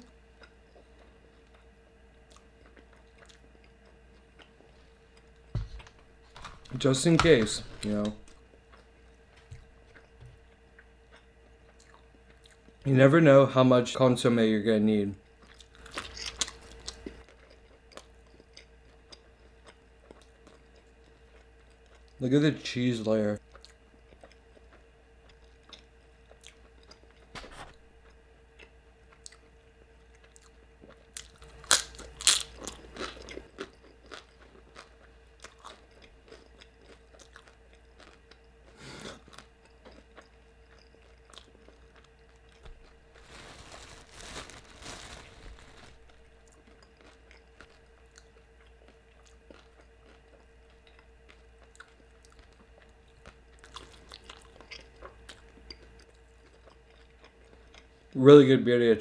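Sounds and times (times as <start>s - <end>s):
faint steady hum: 0.0s - 59.0s
crunching bites of taco: 15.5s - 22.2s, 30.1s - 57.9s.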